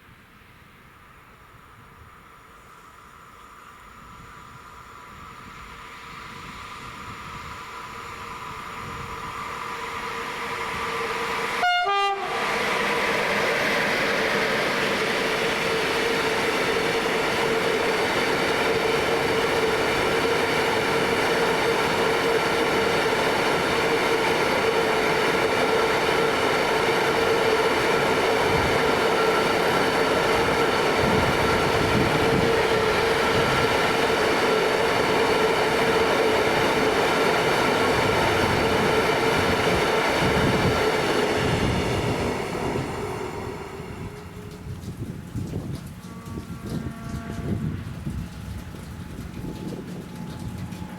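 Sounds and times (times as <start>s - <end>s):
freight train rolling past: 0.2s - 50.9s
train horn blast: 11.5s - 12.6s, 43.2s - 44.7s, 46.0s - 48.1s.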